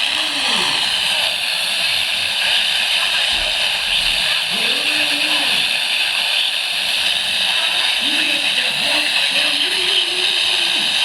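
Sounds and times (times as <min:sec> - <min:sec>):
faint voice: 0:00.0 - 0:01.3
radio static hiss: 0:00.0 - 0:11.0.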